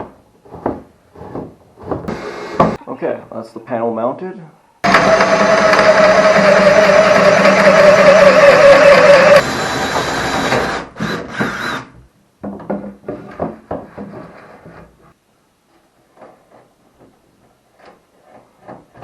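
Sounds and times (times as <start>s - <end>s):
electric drill running: 4.8s - 11.9s.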